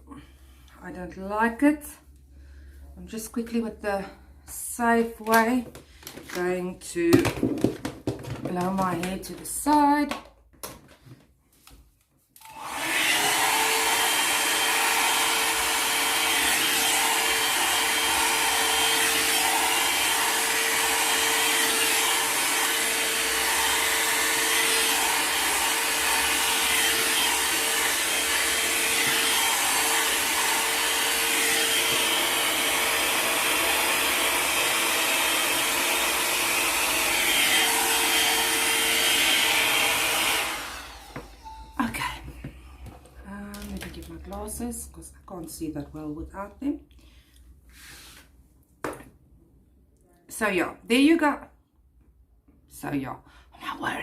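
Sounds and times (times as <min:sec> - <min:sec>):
hot-air brush running: 0:12.4 - 0:42.0.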